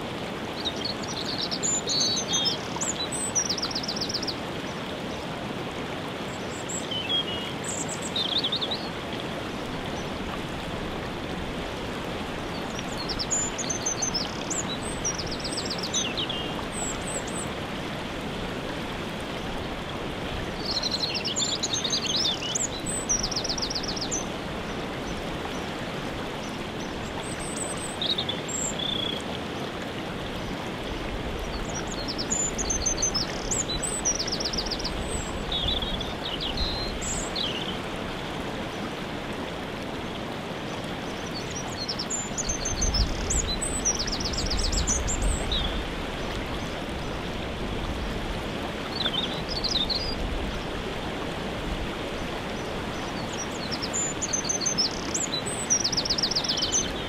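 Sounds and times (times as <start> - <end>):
waterfall rushing: 0.0 - 57.0
songbirds chirping: 12.4 - 17.7, 26.4 - 38.9, 51.7 - 57.0.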